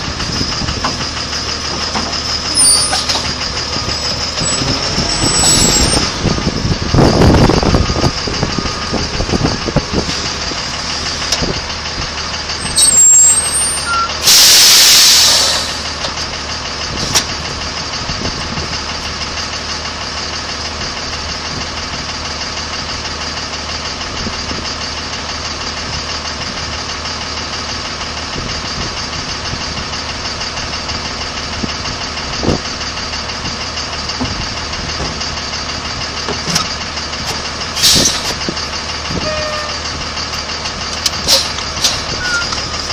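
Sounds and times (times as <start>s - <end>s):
diesel engine running: 0.0s - 42.9s
short squeal: 1.6s - 6.4s, 12.6s - 15.9s, 39.1s - 39.9s, 41.2s - 42.9s
loud burst of noise: 13.8s - 16.0s.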